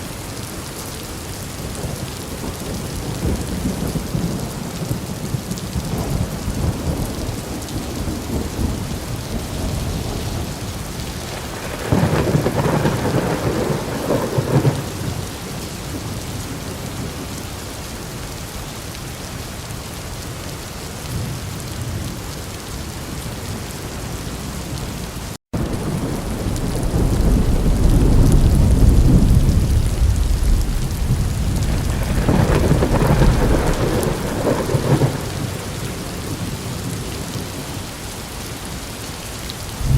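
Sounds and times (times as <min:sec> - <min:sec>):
steady rain: 0:00.0 - 0:39.9
deep rumble of thunder: 0:01.6 - 0:17.4, 0:25.6 - 0:37.7
thunderclap: 0:11.3 - 0:15.2, 0:25.6 - 0:37.3.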